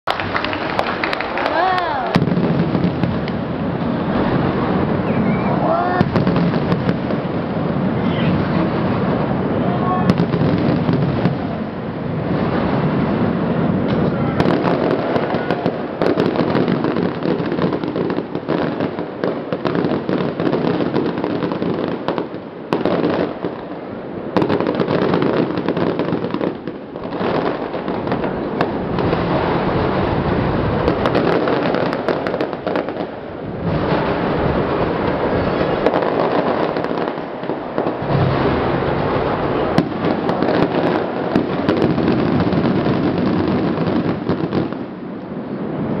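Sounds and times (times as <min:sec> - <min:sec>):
fireworks crackling and popping: 0:00.0 - 0:46.0.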